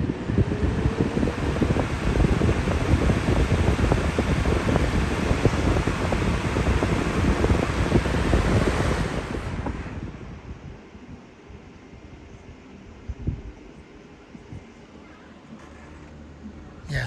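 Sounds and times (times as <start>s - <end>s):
wind buffeting microphone: 0.0s - 11.6s
box fan rushing air: 0.0s - 15.6s.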